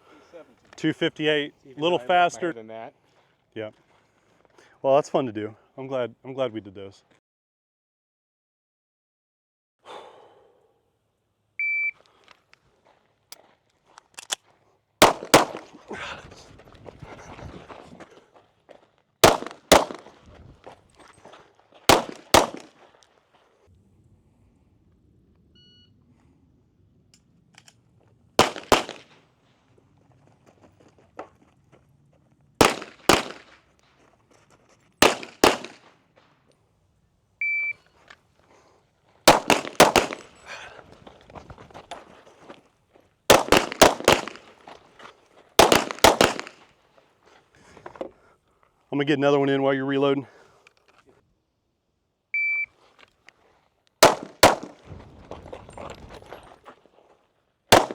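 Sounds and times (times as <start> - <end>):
handgun shots: 15.0 - 15.8, 19.2 - 20.2, 21.9 - 22.8, 28.4 - 29.2, 32.6 - 33.6, 35.0 - 35.9, 39.3 - 40.6, 43.3 - 44.6, 45.6 - 46.7, 54.0 - 54.9
shot timer beep: 37.4 - 37.9, 52.4 - 52.7.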